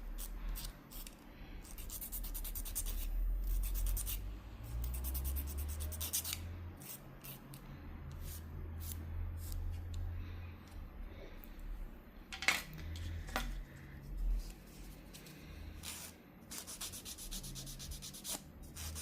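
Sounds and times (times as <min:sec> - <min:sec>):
nail file scraping: 0:00.1 - 0:10.0, 0:15.2 - 0:19.0.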